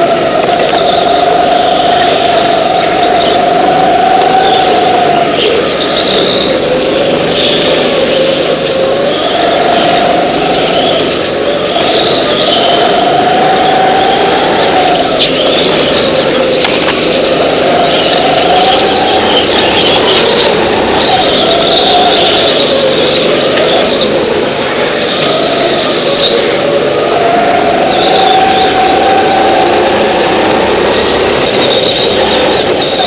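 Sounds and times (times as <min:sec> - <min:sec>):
go-kart engine revving: 0:00.0 - 0:33.0.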